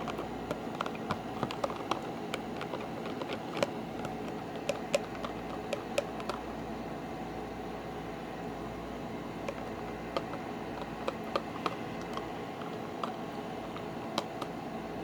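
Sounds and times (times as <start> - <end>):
slime being stirred: 0.0 - 6.7, 9.3 - 14.6.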